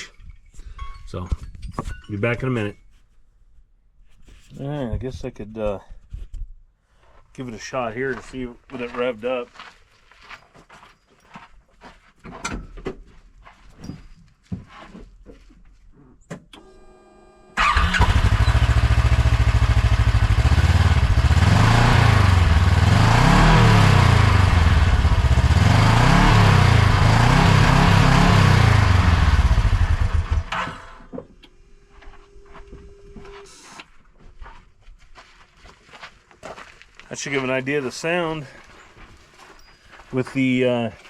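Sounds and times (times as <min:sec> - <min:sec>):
vehicle engine starting and revving: 0:16.6 - 0:30.8.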